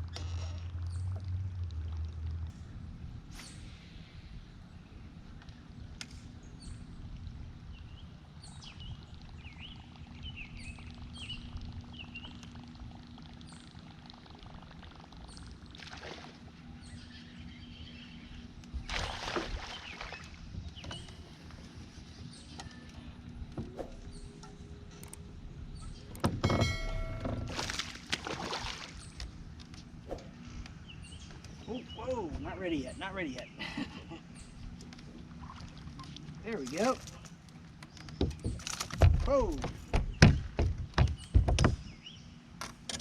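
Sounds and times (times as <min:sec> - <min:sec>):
faint steady hum: 0:00.0 - 0:43.0
wind and water rumble: 0:00.0 - 0:43.0
birds chirping: 0:07.6 - 0:15.8, 0:16.4 - 0:27.7, 0:28.6 - 0:42.6.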